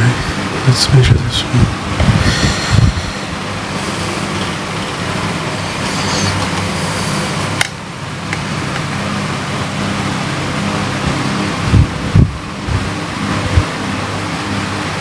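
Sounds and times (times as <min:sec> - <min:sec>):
steady low hum: 0:00.0 - 0:14.8
rushing background noise: 0:00.0 - 0:15.0.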